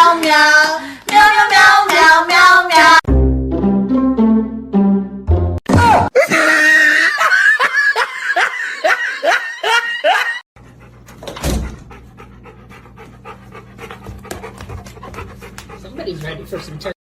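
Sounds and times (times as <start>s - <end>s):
thump: 11.2s - 11.8s.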